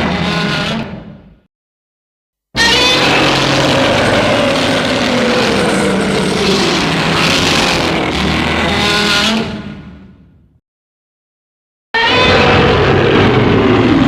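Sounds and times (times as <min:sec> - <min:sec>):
monster roar: 0:02.6 - 0:08.8, 0:12.0 - 0:14.0.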